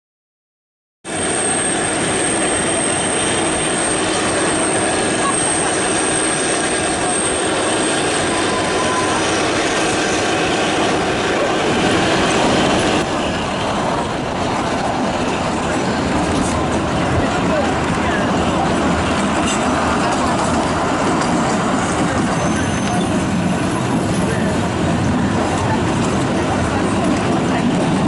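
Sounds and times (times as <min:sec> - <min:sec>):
high wheel squeal: 0:01.1 - 0:13.7, 0:21.9 - 0:24.5
train wheels rumbling on rail: 0:01.1 - 0:28.0.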